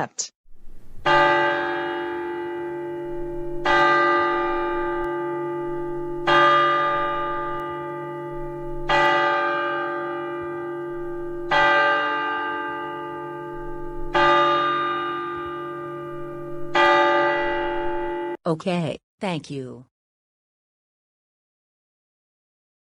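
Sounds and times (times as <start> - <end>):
large bell tolling: 0.6 - 18.4.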